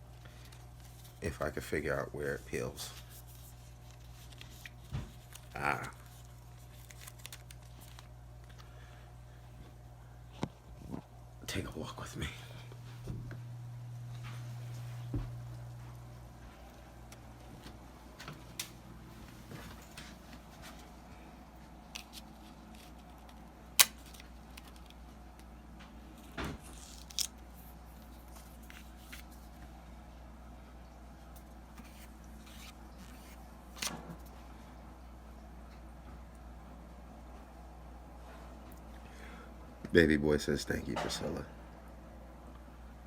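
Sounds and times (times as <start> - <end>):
low steady hum: 0.0 - 43.0.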